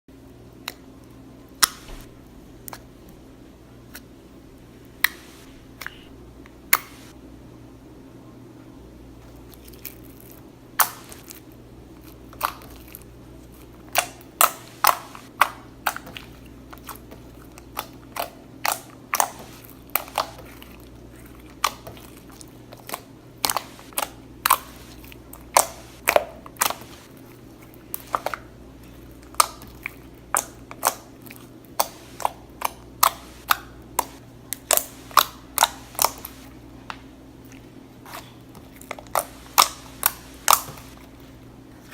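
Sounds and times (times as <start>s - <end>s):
slime clicking and popping: 22.8s - 26.9s, 31.8s - 36.5s, 39.1s - 41.0s.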